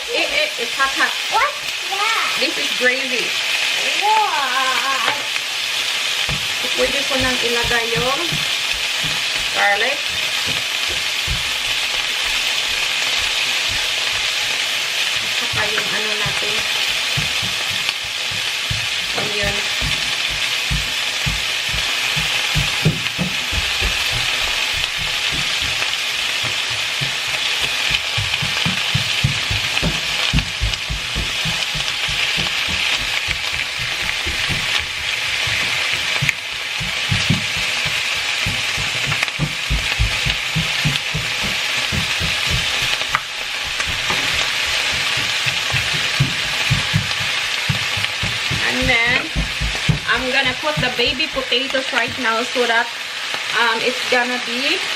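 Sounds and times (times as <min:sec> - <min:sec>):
pork sizzling in a pan: 0:00.0 - 0:54.9
low knocks: 0:17.1 - 0:52.4.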